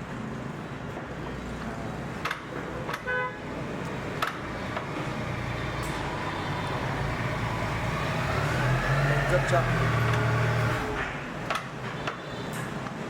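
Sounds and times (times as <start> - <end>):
road traffic rumble: 0.0 - 13.0
vehicle horn toot: 3.0 - 3.4.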